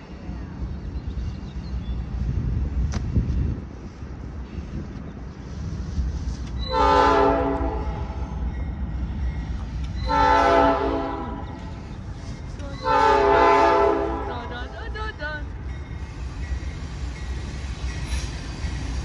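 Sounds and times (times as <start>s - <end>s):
steady low rumble: 0.0s - 10.0s
locomotive air horn blasts: 6.7s - 8.3s, 10.1s - 11.6s, 12.8s - 14.5s.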